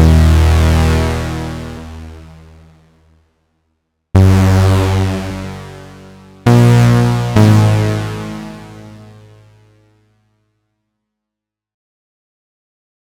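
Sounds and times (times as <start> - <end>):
synthesizer notes: 0.0 - 2.7, 4.2 - 9.4.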